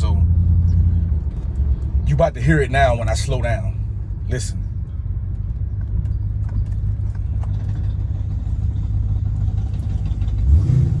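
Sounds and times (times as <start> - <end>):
vehicle low rumble: 0.0 - 11.0.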